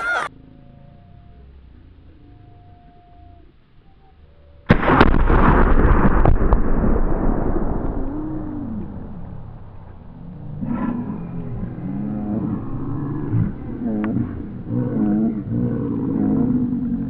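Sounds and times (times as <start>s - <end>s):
rifle shot: 4.7s - 10.3s
loud explosion blast with rumbling echo: 4.7s - 10.7s.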